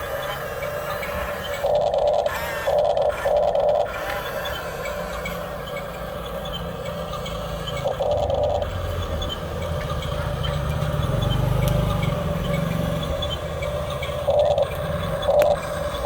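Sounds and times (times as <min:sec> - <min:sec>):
excavator motor running: 0:00.0 - 0:16.0.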